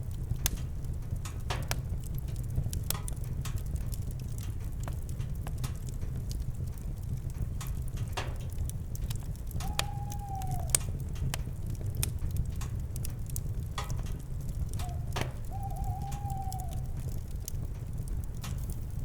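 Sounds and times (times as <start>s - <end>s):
campfire crackling and popping: 0.0s - 19.0s
owl hooting: 9.6s - 11.0s, 14.8s - 17.2s.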